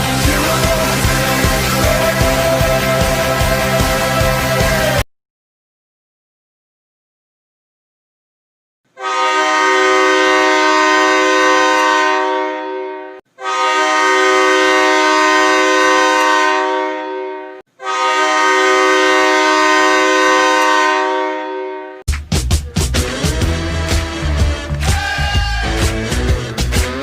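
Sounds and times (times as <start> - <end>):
air horn chord blasts: 8.9 - 22.1.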